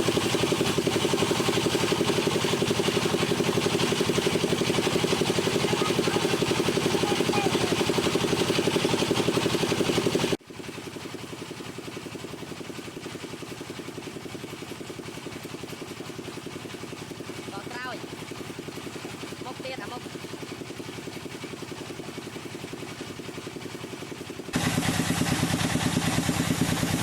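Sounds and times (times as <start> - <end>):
wood lathe running: 0.0 - 10.4, 19.3 - 20.4.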